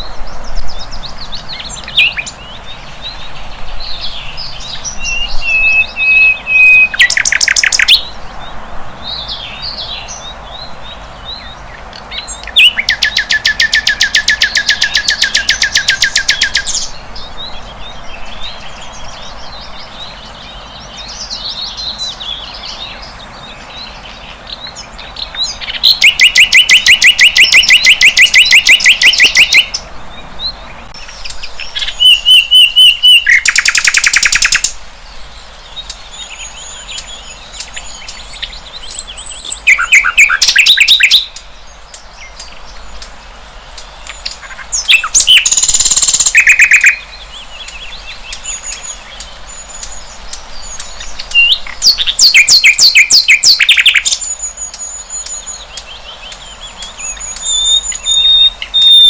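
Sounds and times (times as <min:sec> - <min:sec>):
faint high bird chirps: 0:00.0 - 0:08.2, 0:09.1 - 0:34.8, 0:35.7 - 0:59.0
flycatcher trilling song: 0:00.5 - 0:59.0.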